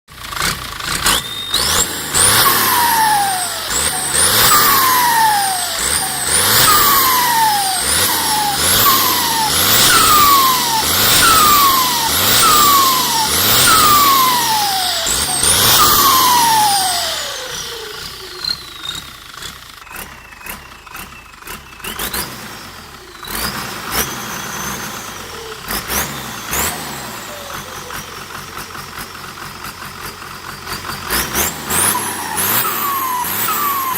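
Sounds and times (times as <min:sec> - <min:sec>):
diesel engine revving: 0:00.1 - 0:33.9
turbo whistle: 0:01.0 - 0:22.4, 0:31.1 - 0:33.9.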